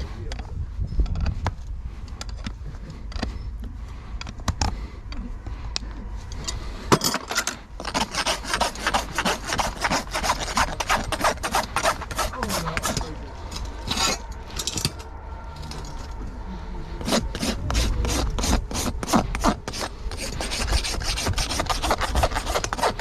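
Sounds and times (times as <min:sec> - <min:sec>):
rasp filing hoof: 0:07.8 - 0:13.2, 0:17.0 - 0:23.0.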